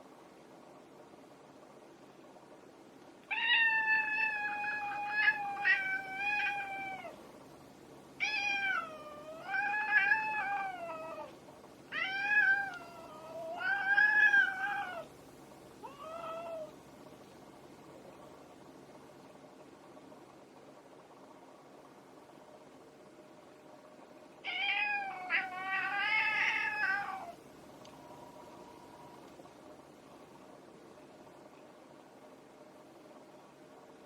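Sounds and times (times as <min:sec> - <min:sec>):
cat yowling: 0:03.3 - 0:07.2, 0:08.2 - 0:11.3, 0:11.9 - 0:15.1, 0:15.8 - 0:16.8, 0:24.5 - 0:27.4.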